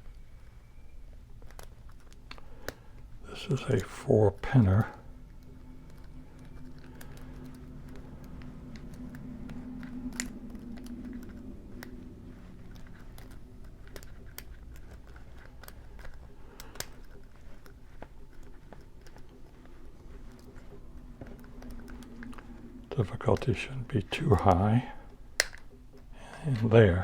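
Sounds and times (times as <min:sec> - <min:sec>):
faint steady hum: 0:00.0 - 0:27.0
lock pick clicking in padlock: 0:25.3 - 0:26.1.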